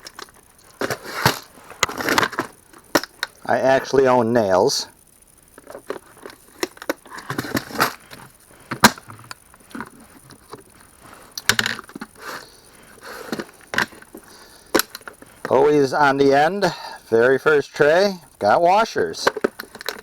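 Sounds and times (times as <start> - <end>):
small metal hardware rattling: 0.0 - 4.8, 5.5 - 15.6, 19.2 - 20.0.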